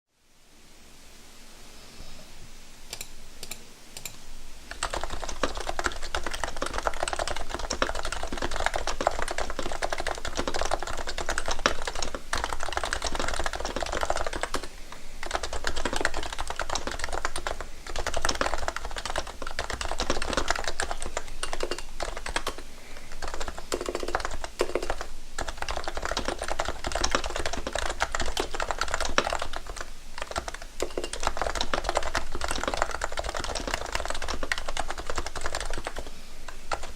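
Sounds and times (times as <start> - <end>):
fast keyboard typing: 4.7 - 36.9.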